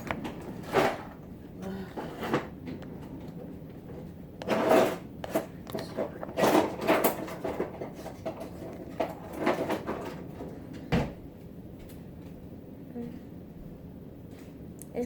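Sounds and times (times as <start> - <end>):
scrapes and knocks of handling: 0.0 - 11.2.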